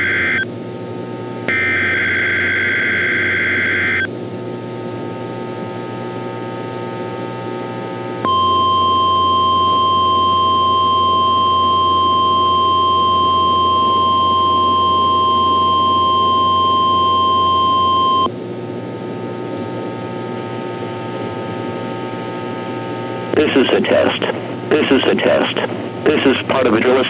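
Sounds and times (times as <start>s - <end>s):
radio hiss and hum: 0.0s - 4.1s, 19.6s - 27.0s.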